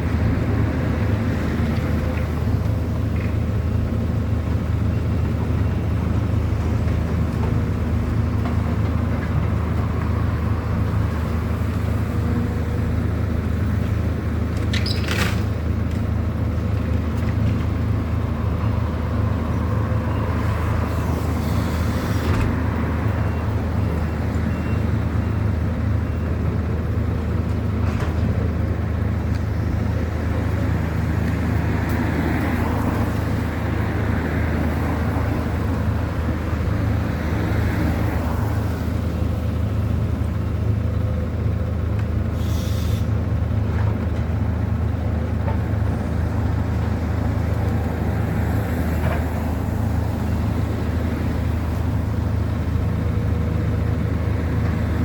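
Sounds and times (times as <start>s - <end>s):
street traffic rumble: 0.0s - 55.0s
brief hiss: 42.4s - 43.1s.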